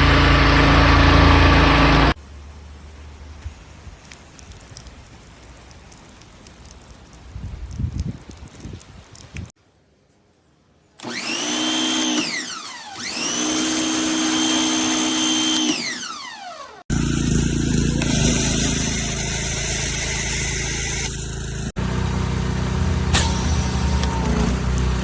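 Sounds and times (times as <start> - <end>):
pressure washer motor whining: 0.0 - 2.2, 11.0 - 25.0.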